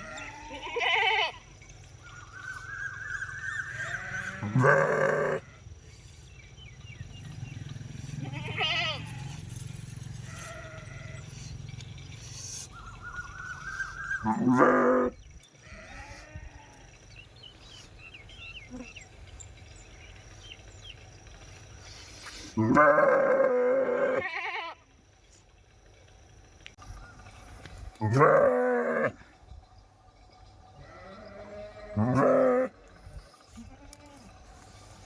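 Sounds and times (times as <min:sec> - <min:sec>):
sheep bleating: 0:00.0 - 0:01.4, 0:03.8 - 0:05.6, 0:08.2 - 0:09.4, 0:22.6 - 0:24.8, 0:28.0 - 0:29.2, 0:30.8 - 0:32.8.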